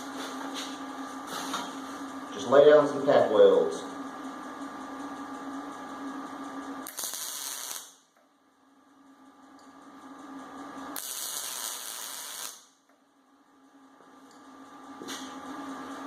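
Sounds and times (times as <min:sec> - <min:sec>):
welding arc hiss and crackle: 0:06.8 - 0:08.0, 0:11.0 - 0:12.7.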